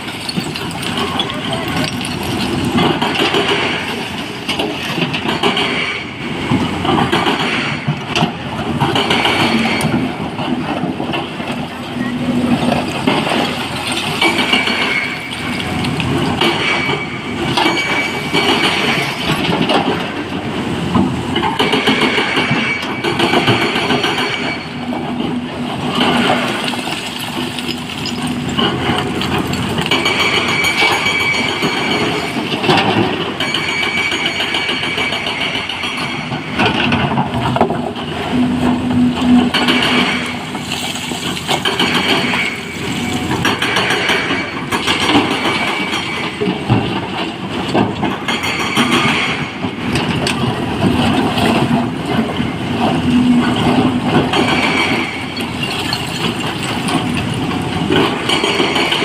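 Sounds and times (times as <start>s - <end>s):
rocks knocking and clattering: 0.0s - 5.8s, 26.0s - 33.2s, 49.9s - 59.0s
diesel engine rumble: 0.0s - 33.5s, 35.3s - 48.3s, 49.0s - 59.0s.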